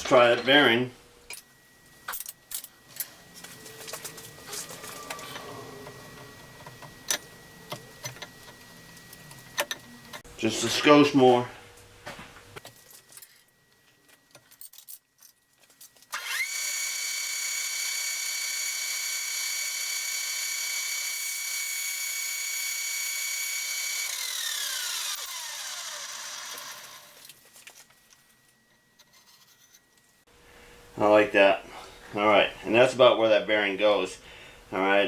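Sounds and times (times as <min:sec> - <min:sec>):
electric motor whining: 0:03.2 - 0:10.2, 0:16.2 - 0:27.3.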